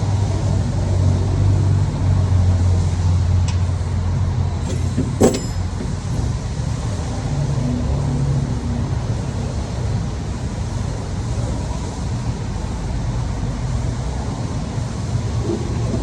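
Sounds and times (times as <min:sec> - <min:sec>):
sharp metallic clink: 0:04.6 - 0:06.4.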